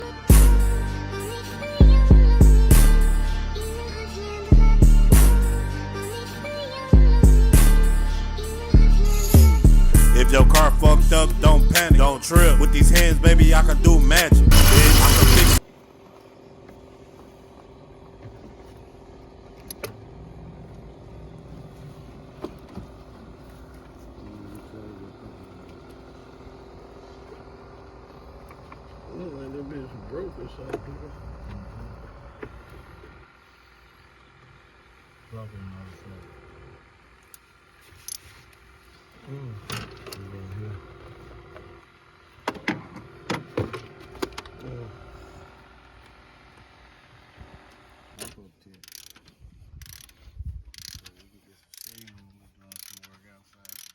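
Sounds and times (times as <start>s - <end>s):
low hum and rumble: 17.0s - 42.4s
metallic clicks and clanks of tools: 48.2s - 53.9s.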